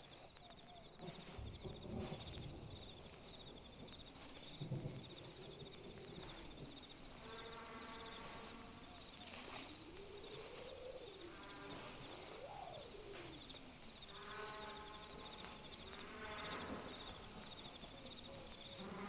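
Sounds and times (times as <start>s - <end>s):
crickets chirping: 0.0s - 19.0s
long hooting calls: 8.9s - 15.1s.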